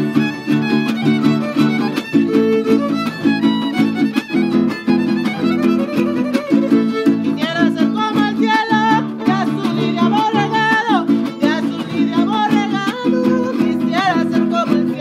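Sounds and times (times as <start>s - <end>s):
strummed guitar chords: 0.0s - 15.0s
violin melody: 0.0s - 15.0s.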